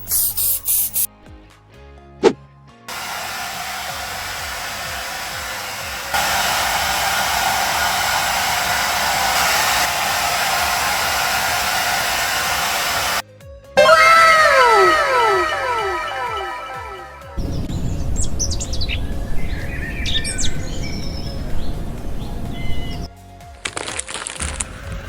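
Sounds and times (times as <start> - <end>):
hair dryer blowing: 2.9 - 13.2, 13.8 - 19.4.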